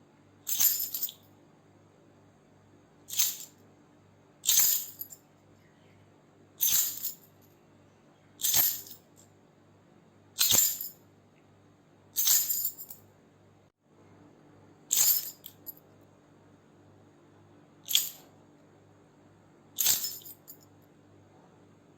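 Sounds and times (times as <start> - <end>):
keys jingling: 4.5 - 5.2, 6.6 - 7.3, 8.4 - 9.0, 10.4 - 10.9, 12.2 - 13.0, 14.9 - 15.7, 17.9 - 18.3, 19.8 - 20.6.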